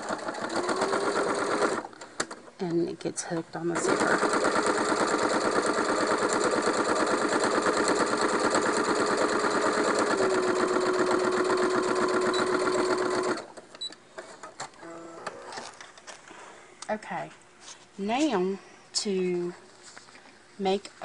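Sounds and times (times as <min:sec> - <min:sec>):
sewing machine stitching: 0:00.0 - 0:01.9, 0:03.8 - 0:13.5.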